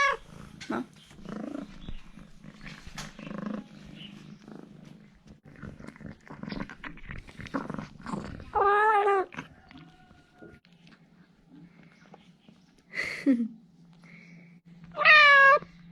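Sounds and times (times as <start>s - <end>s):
cat purring: 0.0s - 9.9s
cat meowing: 14.9s - 15.7s.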